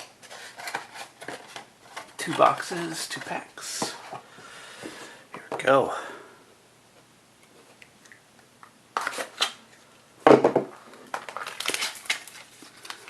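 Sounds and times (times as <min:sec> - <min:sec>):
wrapper crinkling and tearing: 0:09.0 - 0:09.6, 0:10.9 - 0:13.0.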